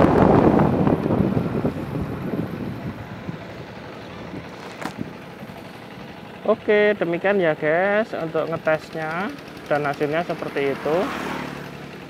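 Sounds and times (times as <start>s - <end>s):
wind buffeting microphone: 0.0s - 6.4s.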